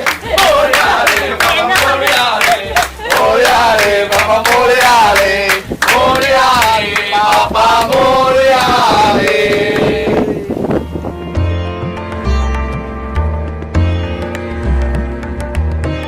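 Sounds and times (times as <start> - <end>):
drum beats: 0.0 - 10.2, 10.8 - 16.0
men chanting: 0.0 - 10.6.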